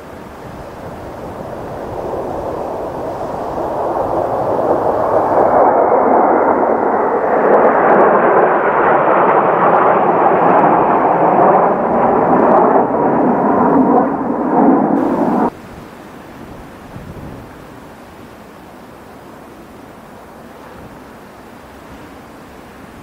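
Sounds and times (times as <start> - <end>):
jets passing overhead: 0.2 - 15.6.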